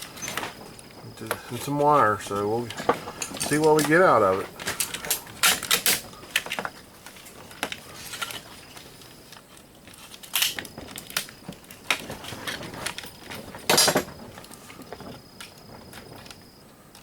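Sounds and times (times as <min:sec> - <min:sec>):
pieces clattering: 0:01.2 - 0:08.8, 0:09.9 - 0:15.5
small plastic pieces clicking: 0:09.9 - 0:12.0.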